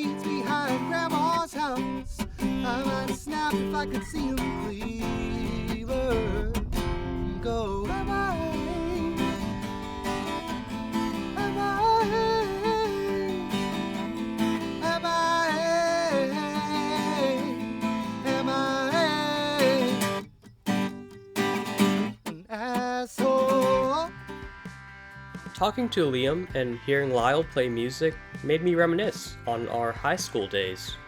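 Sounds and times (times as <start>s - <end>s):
person singing: 0.0s - 20.2s, 22.3s - 24.2s
strummed acoustic guitar: 0.0s - 31.0s.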